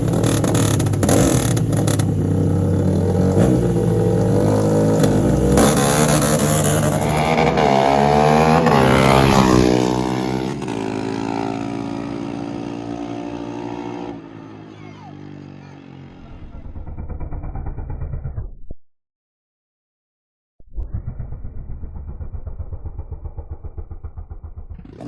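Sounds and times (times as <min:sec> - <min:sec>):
pulsing uneven engine running: 0:00.0 - 0:07.1, 0:14.4 - 0:18.5, 0:20.8 - 0:25.0
engines revving hard: 0:00.0 - 0:17.0.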